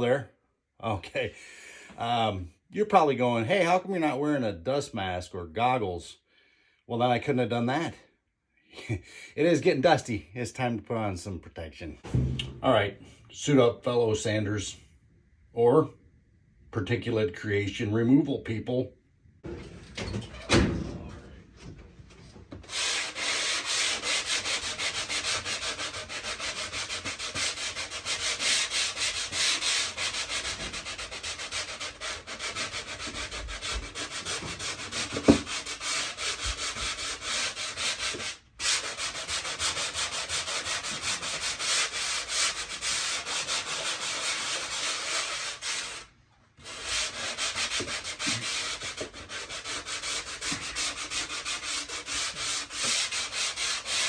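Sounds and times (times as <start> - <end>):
sanding joint compound: 22.7 - 54.0.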